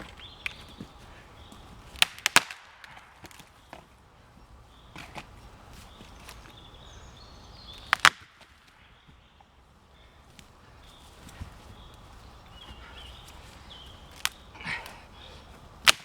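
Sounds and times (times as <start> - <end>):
dead wood snapping: 0.0 - 3.9, 4.9 - 6.6, 7.6 - 9.2, 12.6 - 16.0.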